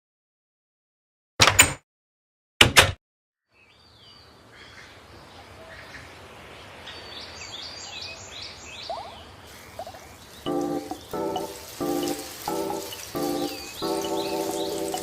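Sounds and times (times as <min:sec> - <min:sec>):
outdoor ambience: 0:03.5 - 0:15.0
birds chirping: 0:03.6 - 0:15.0
bird trills: 0:10.4 - 0:15.0.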